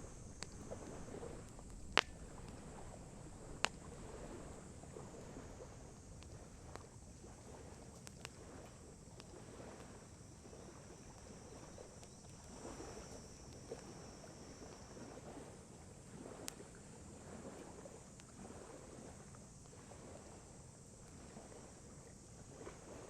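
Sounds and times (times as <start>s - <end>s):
campfire crackling and popping: 0.0s - 5.0s, 6.1s - 10.2s, 11.1s - 14.0s
lake waves lapping: 0.0s - 23.0s.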